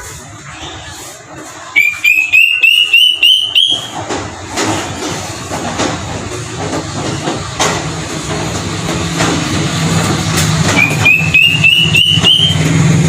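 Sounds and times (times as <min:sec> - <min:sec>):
distant traffic noise: 0:00.0 - 0:13.0
bird rising whistles: 0:01.8 - 0:03.9, 0:10.8 - 0:12.6.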